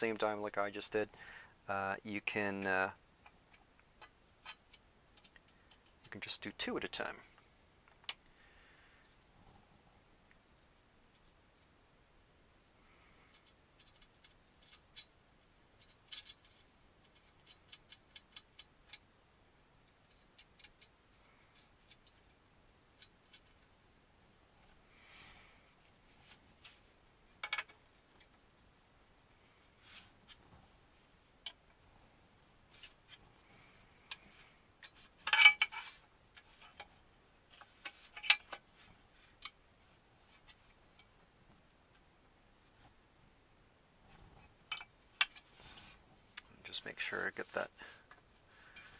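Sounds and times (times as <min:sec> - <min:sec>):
small screws and tool clicking: 0:03.2 - 0:06.1, 0:13.3 - 0:15.2, 0:15.8 - 0:19.1, 0:19.8 - 0:22.4.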